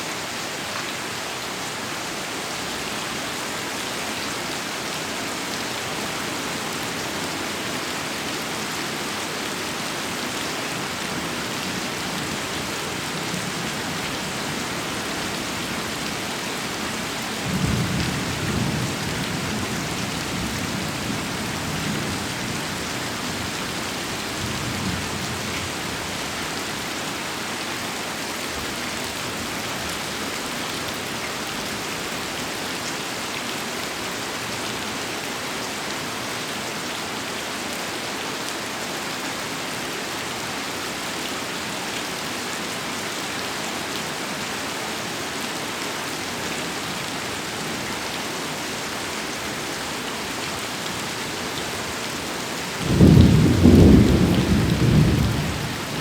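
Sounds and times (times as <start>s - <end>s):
heavy rain: 0.0s - 56.0s
low thunder rumble: 52.8s - 56.0s.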